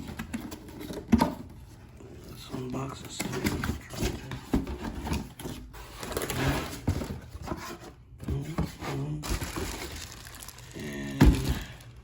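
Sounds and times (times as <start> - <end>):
cardboard box rubbing and scraping: 4.6 - 8.0.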